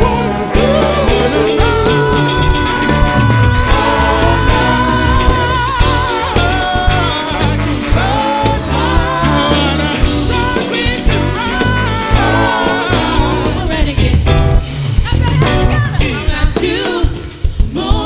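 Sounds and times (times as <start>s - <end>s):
person singing: 0.0s - 14.4s
pulsing bass line: 0.0s - 16.9s
drums: 0.0s - 18.0s.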